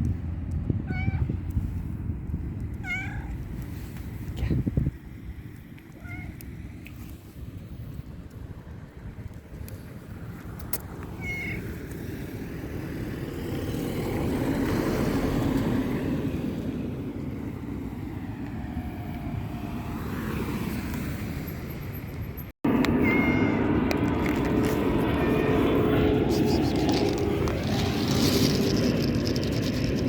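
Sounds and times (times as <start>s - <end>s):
passing traffic: 0.0s - 30.0s
cat meowing: 0.8s - 1.3s, 2.8s - 3.4s, 5.9s - 6.4s, 11.2s - 11.7s, 23.0s - 23.6s.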